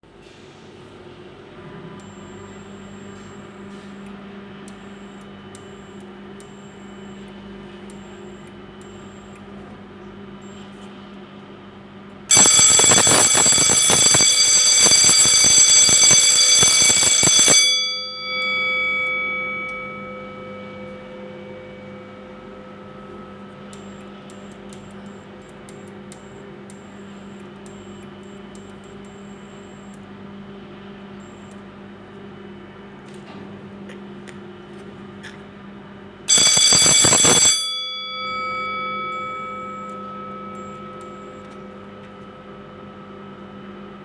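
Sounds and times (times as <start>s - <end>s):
gong ringing on: 12.3s - 25.4s, 36.3s - 44.0s
fire alarm bell ringing: 12.3s - 29.9s, 36.3s - 44.0s
steady low hum: 18.1s - 36.3s, 38.1s - 44.0s.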